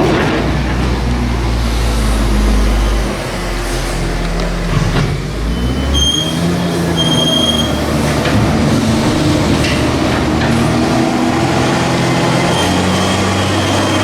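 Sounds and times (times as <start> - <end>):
tractor diesel engine under load: 0.0 - 14.0
high-pitched metallic squeals: 5.4 - 14.0.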